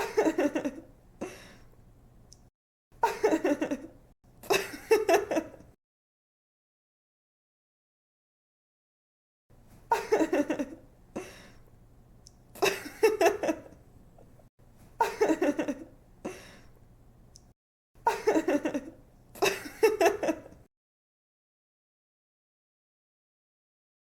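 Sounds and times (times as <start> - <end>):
woman giggling: 0.0 - 0.9, 3.0 - 5.7, 9.9 - 11.4, 12.6 - 13.8, 15.0 - 15.9, 18.1 - 20.6.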